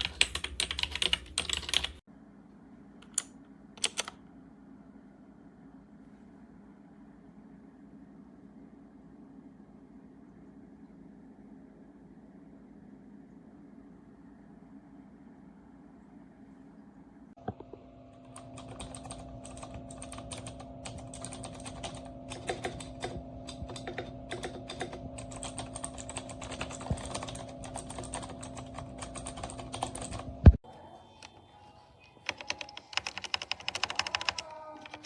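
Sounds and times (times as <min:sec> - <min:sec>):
fast typing on keyboard: 0:00.0 - 0:02.0, 0:03.2 - 0:04.1, 0:18.2 - 0:30.6, 0:32.2 - 0:35.0.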